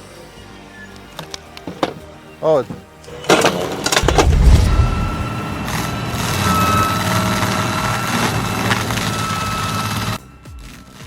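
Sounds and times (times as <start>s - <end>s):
heavy machine engine rumbling: 4.0s - 5.8s.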